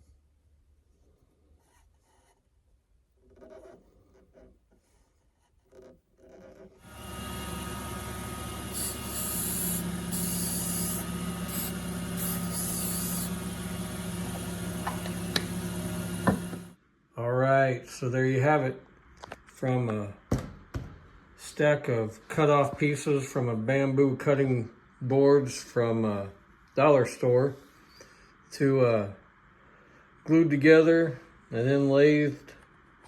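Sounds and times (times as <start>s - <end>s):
wood lathe motor hum: 6.8s - 16.8s
rubbing hiss on spinning wood: 6.9s - 16.7s.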